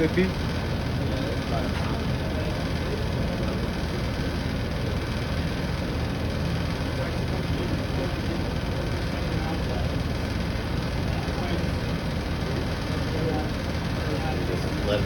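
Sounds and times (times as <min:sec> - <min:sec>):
air conditioner humming: 0:00.0 - 0:15.0.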